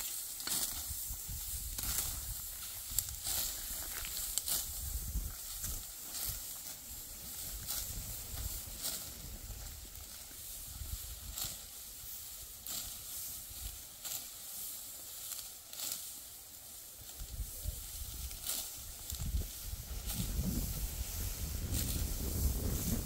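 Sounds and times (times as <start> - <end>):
dry wheat stalks rustling: 0.0 - 23.0
steady hiss: 0.0 - 23.0
wind rumble on microphone: 0.8 - 3.2, 3.8 - 5.8, 17.2 - 23.0.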